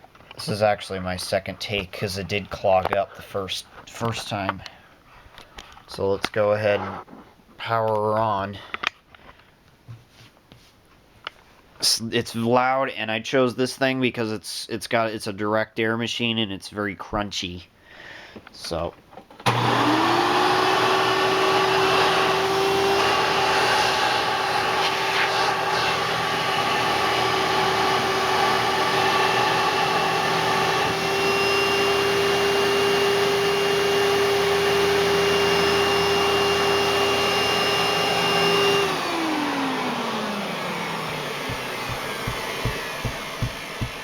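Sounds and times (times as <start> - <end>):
vacuum cleaner motor whine: 19.4 - 44.0.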